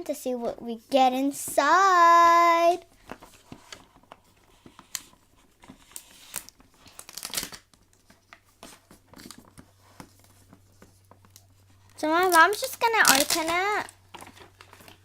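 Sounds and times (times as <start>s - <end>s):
package wrapping crinkling and tearing: 3.0s - 10.5s, 11.1s - 15.0s.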